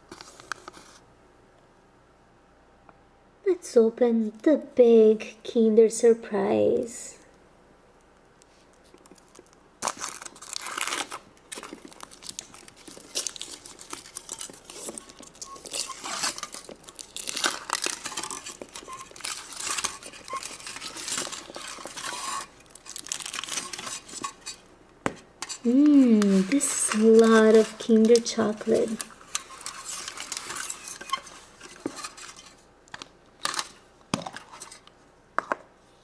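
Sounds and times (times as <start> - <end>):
foil wrapper crinkling and tearing: 8.4 - 24.7, 25.4 - 33.8.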